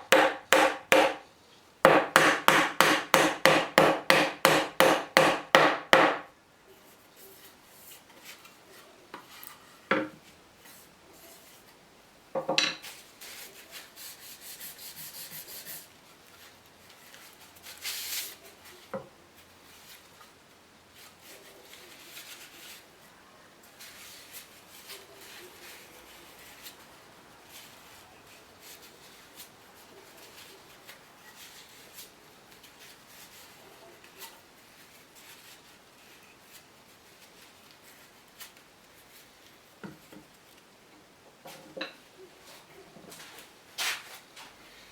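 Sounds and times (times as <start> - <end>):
wood rubbing strokes: 13.0 - 20.2.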